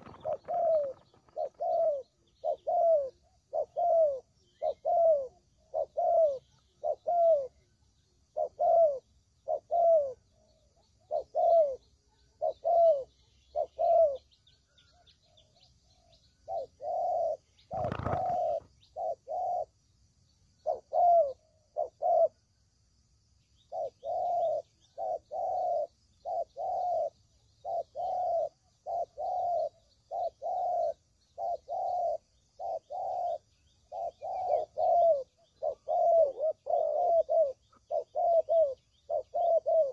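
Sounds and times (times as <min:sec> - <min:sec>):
dove cooing: 0:00.0 - 0:19.8, 0:20.6 - 0:22.5, 0:23.6 - 0:39.9
small birds chirping: 0:00.0 - 0:39.9.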